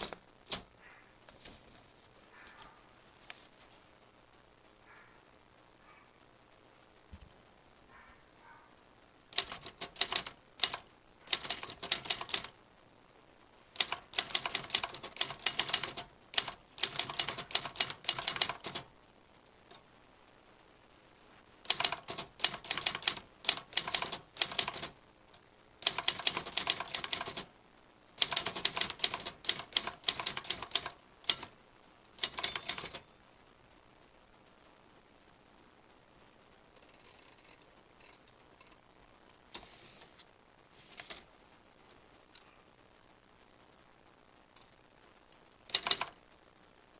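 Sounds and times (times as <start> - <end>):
typewriter key clacks: 9.4 - 12.6, 13.8 - 18.8, 21.7 - 25.0, 25.8 - 27.4, 28.2 - 31.5, 32.2 - 33.1, 45.7 - 46.2.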